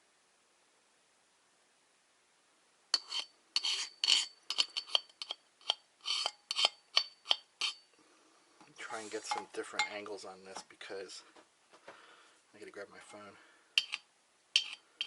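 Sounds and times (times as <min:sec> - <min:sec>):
screwdriver scraping metal: 0:03.0 - 0:07.8, 0:13.8 - 0:15.0.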